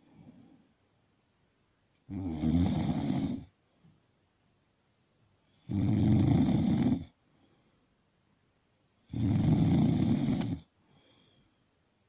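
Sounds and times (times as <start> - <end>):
rough snoring: 2.1 - 3.5, 5.6 - 7.1, 9.1 - 10.7.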